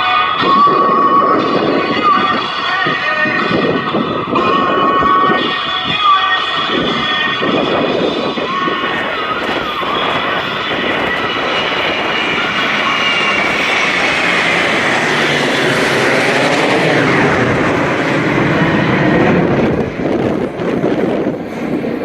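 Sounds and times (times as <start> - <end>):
aircraft flying past: 6.6 - 22.0.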